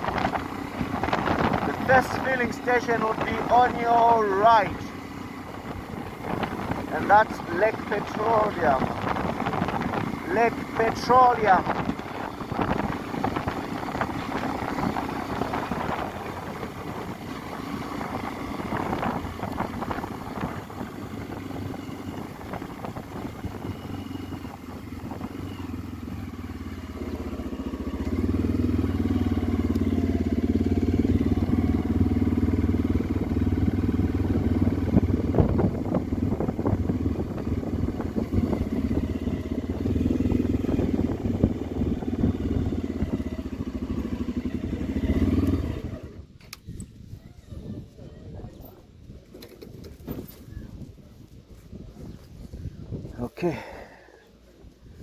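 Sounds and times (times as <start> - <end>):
motorcycle engine running: 0.0 - 47.1
road and wind noise: 0.0 - 55.0.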